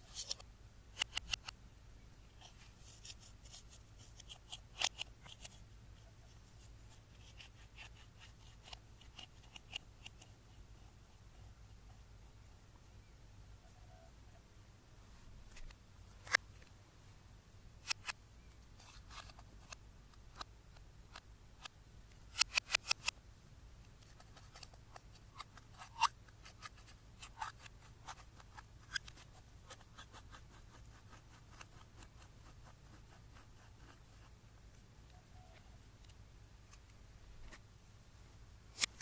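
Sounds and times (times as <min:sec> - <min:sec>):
sharp clicks and snaps: 0:00.2 - 0:01.6, 0:19.2 - 0:23.2.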